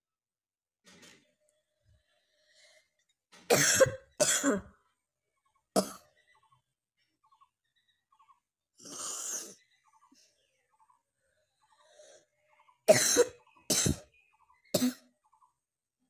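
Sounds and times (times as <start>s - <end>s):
person coughing hard: 3.5s - 4.7s, 5.8s - 6.0s, 12.9s - 14.1s.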